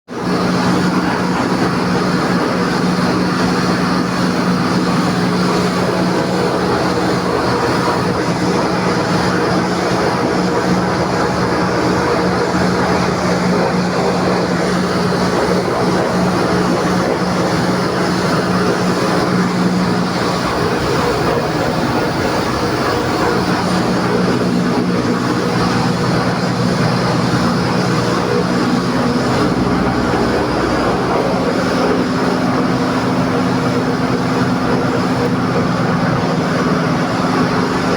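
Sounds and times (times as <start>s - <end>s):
air compressor humming: 0.2s - 37.9s.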